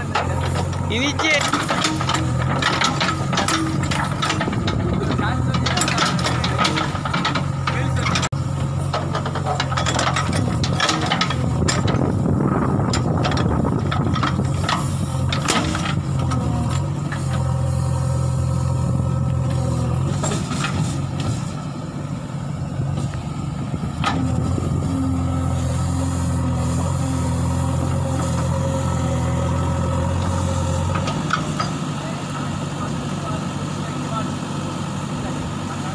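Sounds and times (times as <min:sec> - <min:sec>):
diesel engine running under load: 0:00.0 - 0:35.9
machine knocking and clattering: 0:00.1 - 0:08.3, 0:08.9 - 0:12.0.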